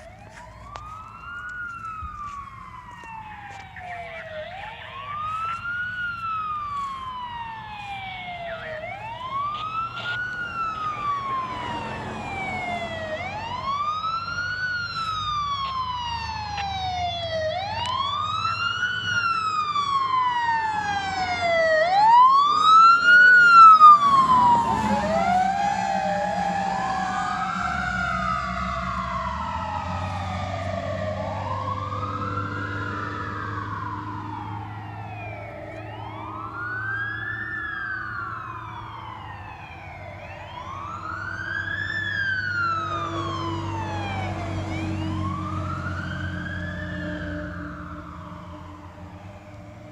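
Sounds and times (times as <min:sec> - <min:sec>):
second siren: 0:00.0 - 0:49.9
siren wailing: 0:00.0 - 0:49.9
vehicle engine rumble: 0:00.0 - 0:49.9.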